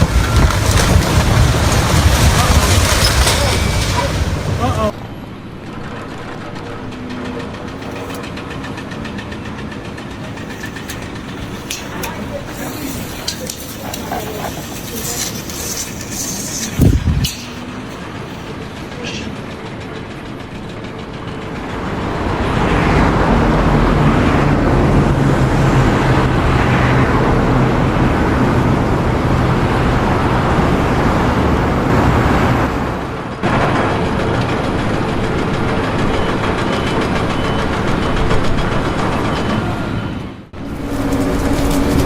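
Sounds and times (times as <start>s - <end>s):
machine humming: 0.0s - 26.7s.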